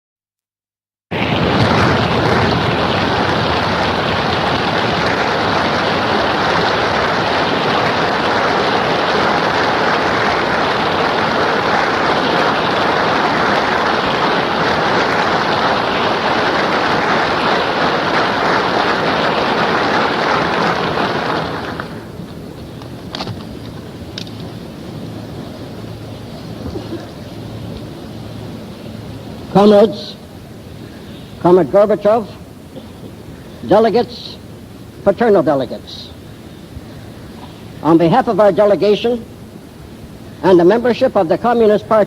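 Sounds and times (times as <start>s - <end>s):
audience applause: 1.1s - 29.8s
radio crackle: 1.1s - 34.4s.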